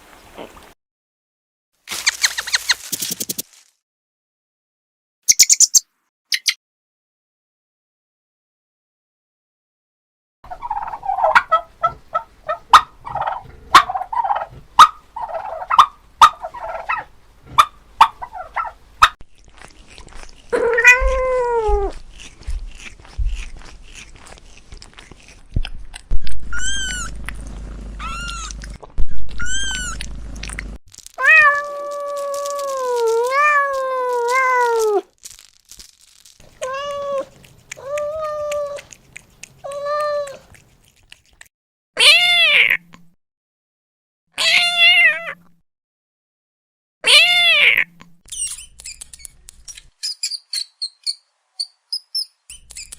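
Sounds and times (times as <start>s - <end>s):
cat meowing: 20.5s - 22.0s, 26.5s - 27.1s, 28.0s - 28.6s, 29.3s - 30.0s, 31.2s - 35.1s, 36.5s - 38.9s, 39.6s - 40.5s, 42.0s - 42.9s, 44.4s - 45.4s, 47.0s - 47.9s.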